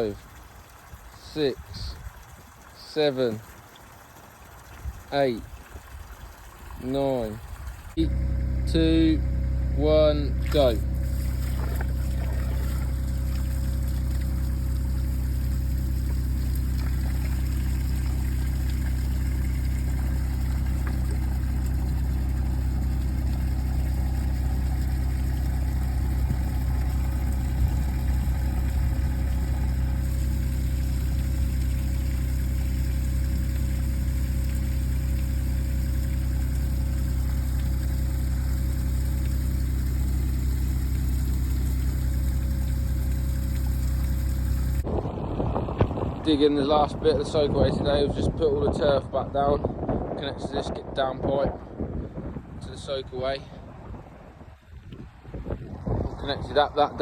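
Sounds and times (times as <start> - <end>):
dumper engine idling: 8.0 - 44.8.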